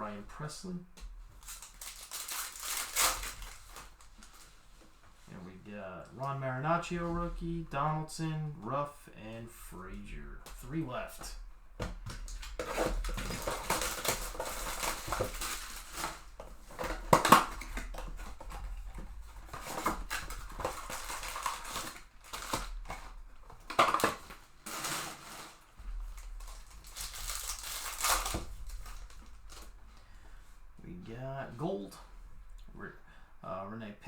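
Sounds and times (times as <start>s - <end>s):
cards and wrappers rustling: 1.1s - 8.3s, 10.2s - 30.8s
foil wrapper crinkling: 1.3s - 4.7s, 12.1s - 30.4s.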